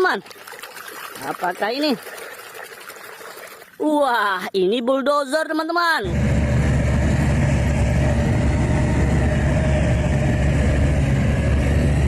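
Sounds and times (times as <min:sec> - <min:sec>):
low motor hum: 0:06.0 - 0:12.0.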